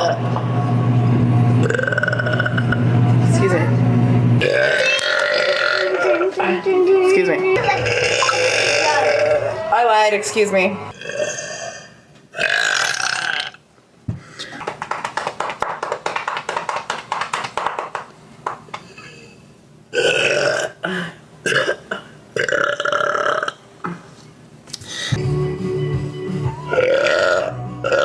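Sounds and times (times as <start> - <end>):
woman burping loudly: 1.6 - 2.8, 4.4 - 6.4, 7.6 - 9.6, 10.9 - 13.6, 19.9 - 23.6, 26.7 - 28.0.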